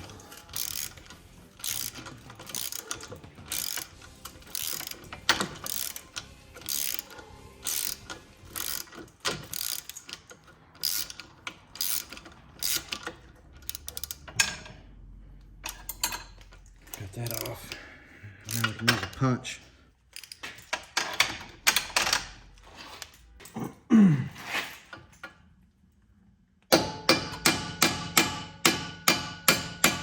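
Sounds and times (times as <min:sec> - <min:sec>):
ratchet wrench clicking: 0:00.0 - 0:17.8, 0:18.4 - 0:19.2, 0:20.2 - 0:22.4.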